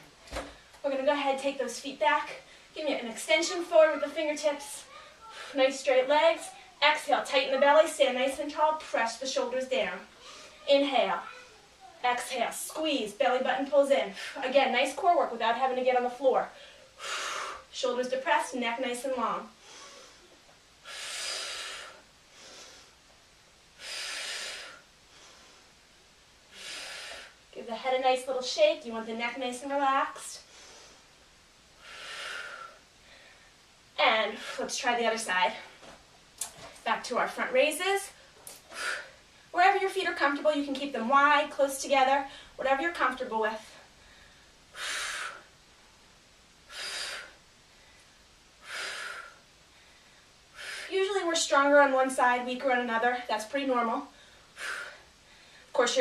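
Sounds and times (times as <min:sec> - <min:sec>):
woman breathing deeply: 0:16.6 - 0:17.7, 0:19.6 - 0:23.1, 0:23.8 - 0:25.8, 0:26.5 - 0:27.5, 0:30.4 - 0:33.7, 0:34.3 - 0:34.7, 0:38.1 - 0:39.6, 0:43.7 - 0:45.6, 0:46.6 - 0:50.9, 0:54.1 - 0:55.8.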